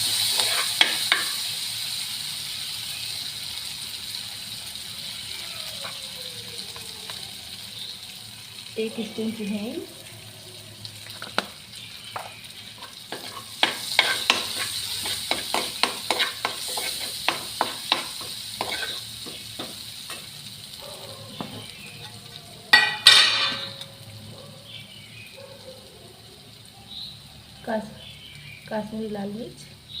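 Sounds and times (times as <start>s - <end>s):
spices sizzling in oil: 0.0s - 30.0s
pan clattering: 21.4s - 24.0s.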